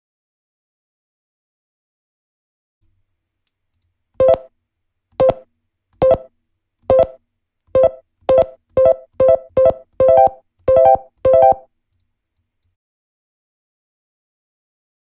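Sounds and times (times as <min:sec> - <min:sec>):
electronic tone blip with click: 0:04.2 - 0:04.5, 0:05.2 - 0:05.4, 0:06.0 - 0:06.3, 0:06.9 - 0:07.2, 0:07.8 - 0:11.6.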